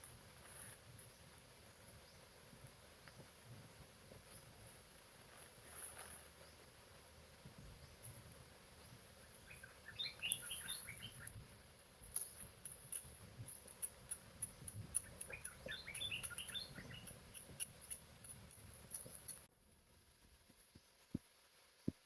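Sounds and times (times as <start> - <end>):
small bird twittering: 8.8 - 11.4, 12.1 - 19.5
high ticking clicks: 12.0 - 19.5.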